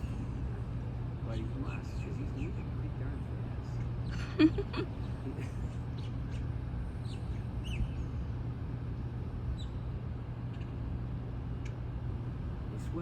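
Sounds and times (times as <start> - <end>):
low outdoor rumble: 0.0 - 13.0
faint bird chirps: 5.0 - 8.3.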